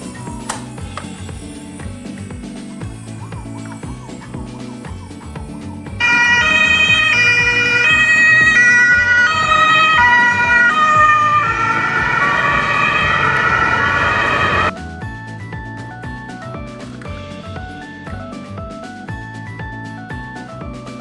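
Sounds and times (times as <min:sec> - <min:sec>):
ambulance siren: 0:03.2 - 0:14.7.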